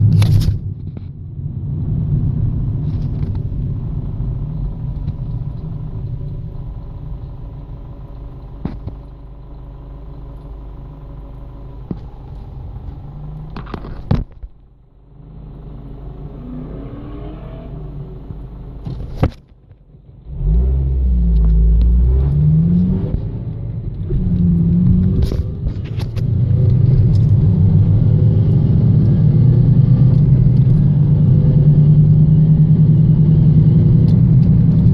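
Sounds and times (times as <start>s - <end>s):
car engine rattling: 0.0s - 34.9s
engine revving: 15.2s - 18.6s, 20.2s - 34.9s.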